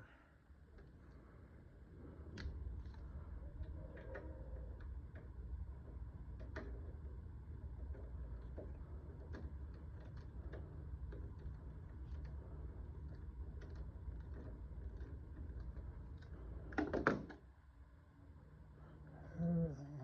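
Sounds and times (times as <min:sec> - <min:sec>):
small clicks and taps: 0:02.3 - 0:17.4.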